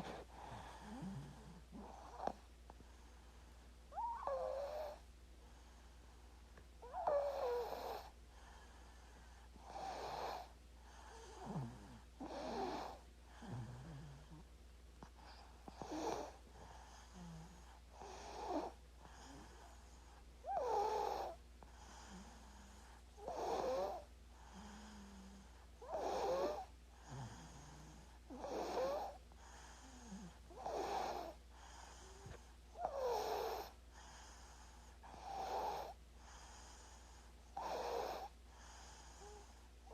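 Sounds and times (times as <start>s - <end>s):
baby snoring: 0.0s - 2.5s, 3.9s - 5.0s, 6.8s - 8.2s, 9.6s - 14.5s, 15.1s - 39.9s.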